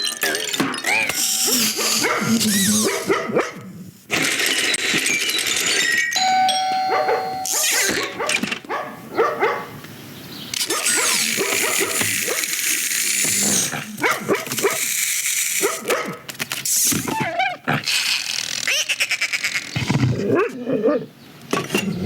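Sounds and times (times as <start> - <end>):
dog barking and whining: 0.8 - 3.8, 6.7 - 9.8, 10.6 - 12.6, 13.3 - 14.9, 15.6 - 16.3, 20.1 - 21.1
bell-like ringing: 6.0 - 7.7.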